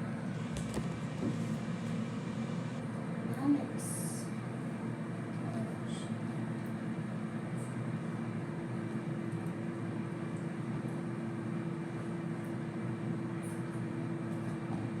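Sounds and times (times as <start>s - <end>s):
steady low hum: 0.0s - 3.1s.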